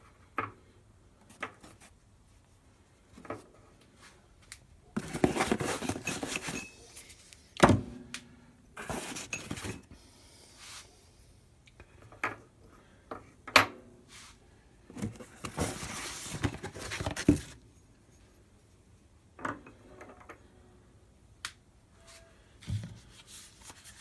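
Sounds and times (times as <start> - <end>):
scraping or rustling: 5.0 - 7.3, 8.8 - 9.8, 15.0 - 17.6.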